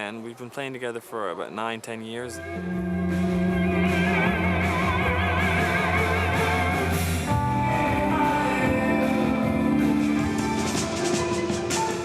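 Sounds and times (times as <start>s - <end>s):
held low bass note: 2.4s - 9.8s
band music with vibrato melody: 2.4s - 12.0s.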